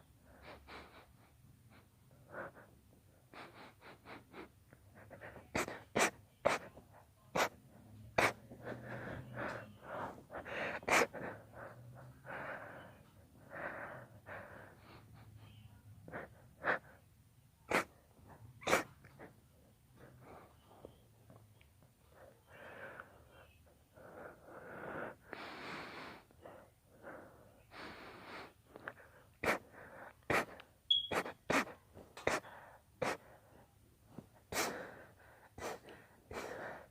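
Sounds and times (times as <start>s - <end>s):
girl sneezing: 18.6s - 18.9s
gasping inhalations: 34.5s - 36.9s.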